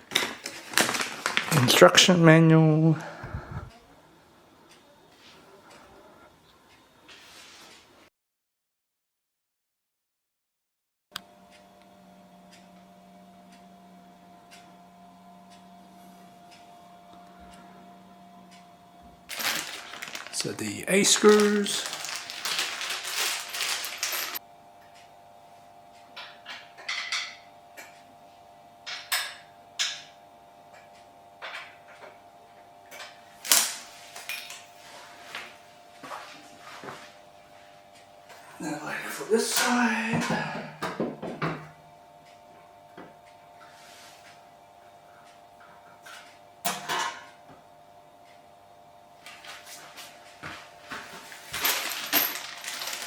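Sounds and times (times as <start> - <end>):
handling noise: 19.3 - 24.4, 51.0 - 53.0
hardware clattering: 19.3 - 24.4, 51.5 - 53.0
screws and parts rattling: 19.3 - 24.4, 51.4 - 53.0.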